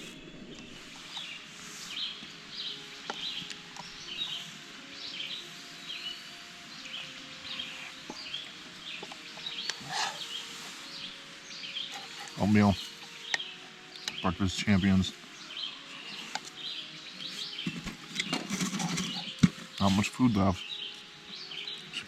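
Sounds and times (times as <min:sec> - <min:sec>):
sliding whistled bird notes: 0:00.0 - 0:14.3
songbirds chirping: 0:00.0 - 0:22.0.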